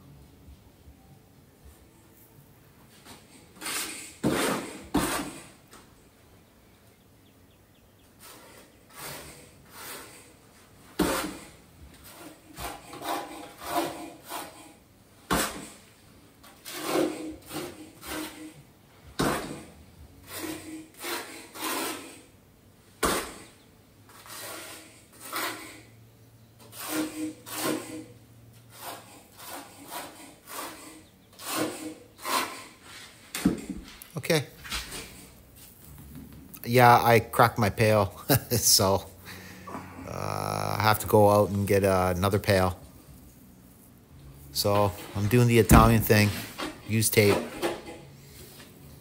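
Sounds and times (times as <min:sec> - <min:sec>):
steel trowel scraping mortar: 0:03.6 - 0:05.6, 0:08.2 - 0:10.4, 0:11.0 - 0:15.8, 0:16.5 - 0:18.6, 0:20.3 - 0:22.3, 0:24.1 - 0:26.0, 0:26.6 - 0:33.2.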